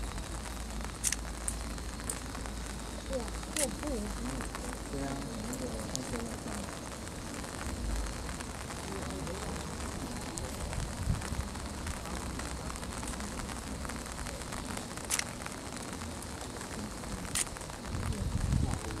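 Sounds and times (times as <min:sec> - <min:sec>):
faint distant voices: 0:00.0 - 0:19.0
noisy hiss and low rumble: 0:00.0 - 0:19.0
sharp clicks: 0:01.0 - 0:02.2, 0:15.1 - 0:15.4.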